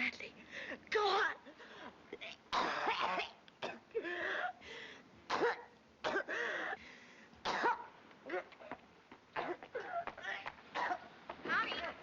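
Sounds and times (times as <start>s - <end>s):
woman coughing: 2.3s - 4.6s, 5.3s - 6.8s, 7.4s - 8.8s, 9.4s - 11.1s.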